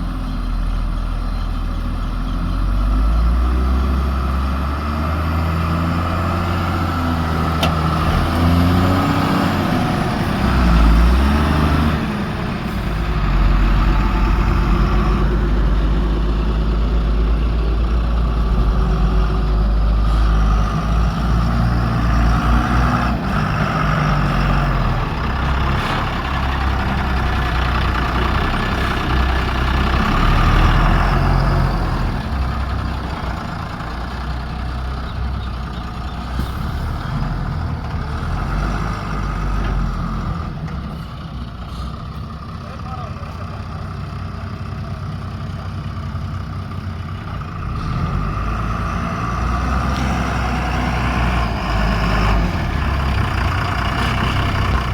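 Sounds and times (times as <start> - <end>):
backhoe diesel engine running hard: 0.0 - 54.9.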